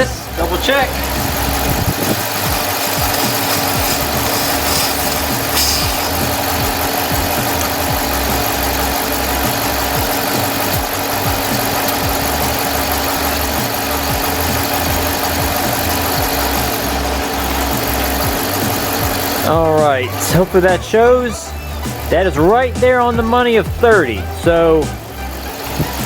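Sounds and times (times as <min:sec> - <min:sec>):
truck engine idling: 0:00.0 - 0:26.0
air compressor pulsing: 0:00.9 - 0:20.7.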